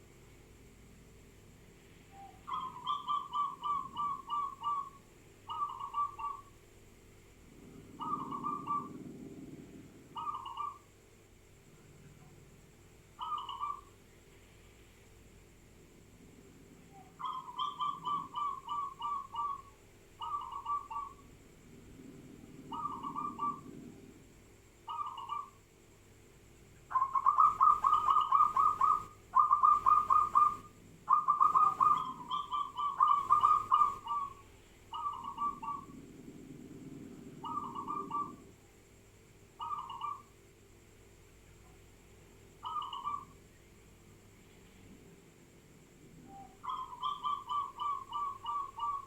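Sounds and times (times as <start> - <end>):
doves cooing: 2.2 - 6.6, 7.4 - 11.0, 13.2 - 13.9, 16.7 - 25.6, 26.9 - 38.6, 39.6 - 40.3, 42.6 - 43.4, 46.1 - 49.0.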